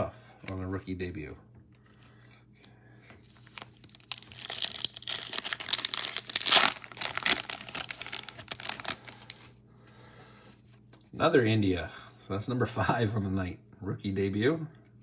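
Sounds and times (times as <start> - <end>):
foil wrapper crinkling and tearing: 3.3 - 9.6.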